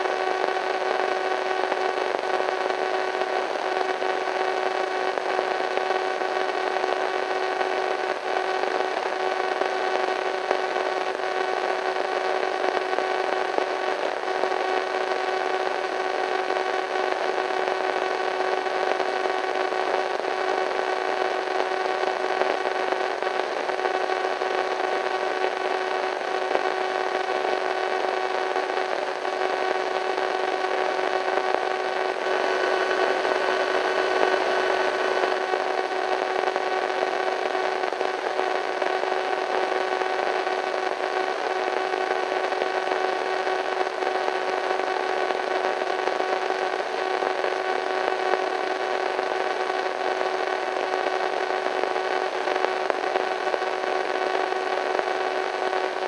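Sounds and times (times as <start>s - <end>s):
radio static hiss: 0.0s - 56.0s.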